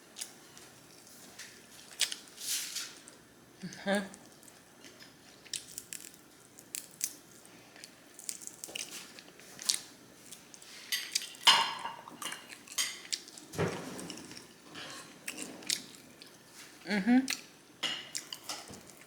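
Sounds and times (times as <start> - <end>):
biting and chewing crackles: 4.2 - 11.5.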